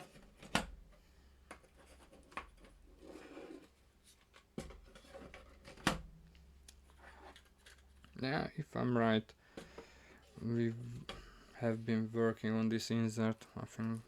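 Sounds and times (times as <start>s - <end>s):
plastic sliding and rubbing: 1.5s - 5.8s, 6.8s - 8.1s.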